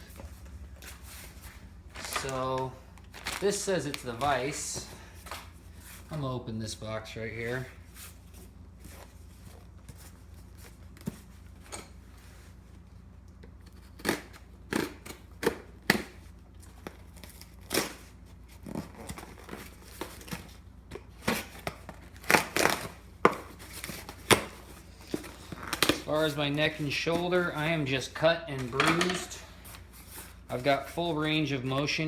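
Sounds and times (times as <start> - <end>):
tape and packing material ripping: 2.0 - 4.6, 13.7 - 20.5, 21.2 - 26.4.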